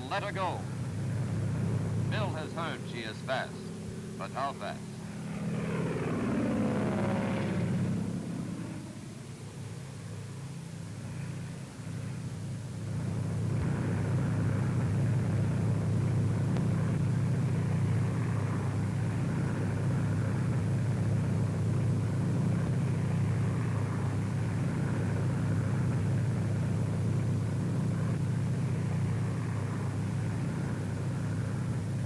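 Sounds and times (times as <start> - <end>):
aircraft engines droning: 0.0 - 32.0.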